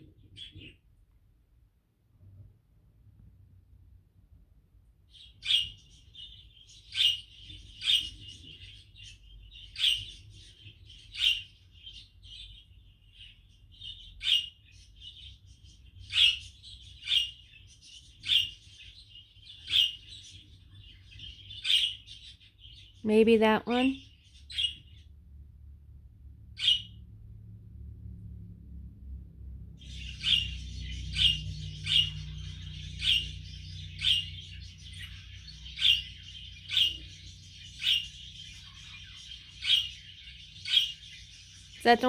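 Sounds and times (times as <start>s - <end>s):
bird chirping: 0.0s - 0.8s, 5.1s - 25.8s, 26.4s - 27.1s, 29.7s - 42.0s.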